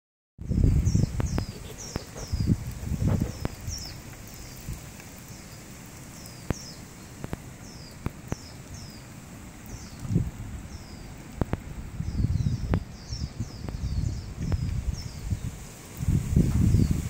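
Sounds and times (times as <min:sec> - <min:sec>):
low bumps: 0:00.4 - 0:04.8
small bird chirping: 0:00.5 - 0:11.2, 0:12.0 - 0:15.5.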